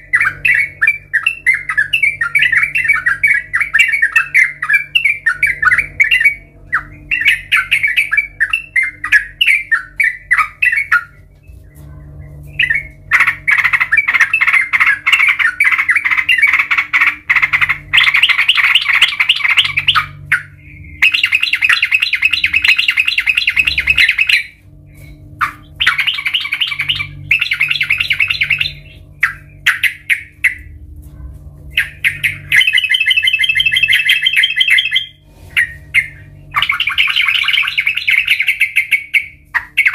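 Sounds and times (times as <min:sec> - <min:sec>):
bird chattering calls: 0:11.8 - 0:30.8, 0:31.7 - 0:39.9.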